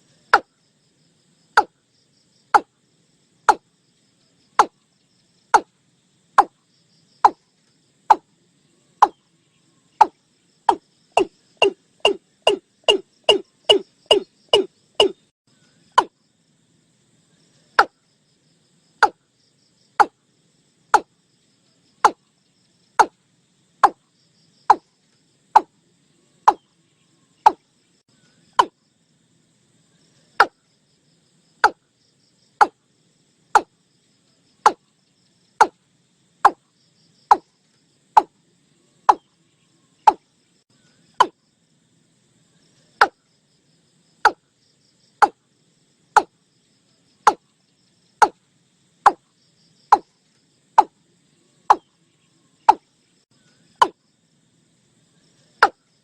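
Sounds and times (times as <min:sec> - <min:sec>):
faint high insect hum: 0:00.0 - 0:56.0
watercock calling: 0:11.2 - 0:15.2.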